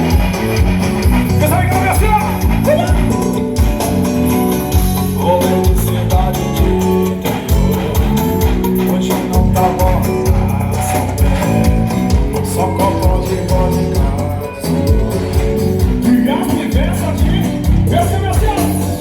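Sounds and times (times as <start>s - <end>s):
heavy bass line: 0.0s - 19.0s
thumping beat: 0.0s - 19.0s
person singing: 4.9s - 19.0s.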